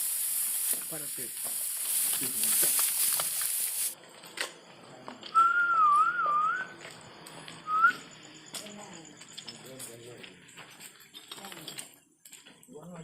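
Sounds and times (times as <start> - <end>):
loud hiss: 0.0 - 4.0
wavering whistle: 5.3 - 6.8, 7.6 - 8.2
short rising whistle: 5.4 - 6.8, 7.6 - 8.1.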